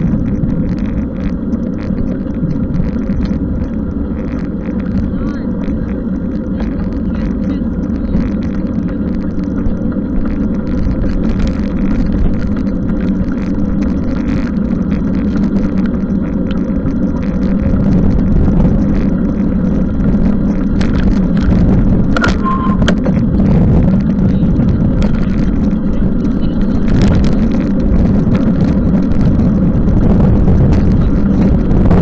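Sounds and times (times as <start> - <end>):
bicycle road and wind noise: 0.0 - 32.0
brief higher-pitched tone: 22.2 - 23.1.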